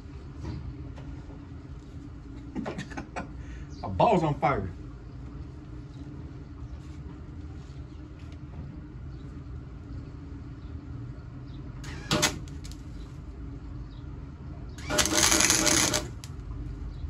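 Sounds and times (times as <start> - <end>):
steady low hum: 0.0 - 17.0
welding arc crackling: 11.9 - 12.8, 14.8 - 16.4.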